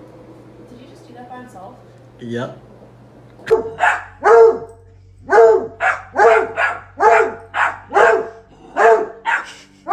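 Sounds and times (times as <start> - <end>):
dog barking: 3.5 - 9.9.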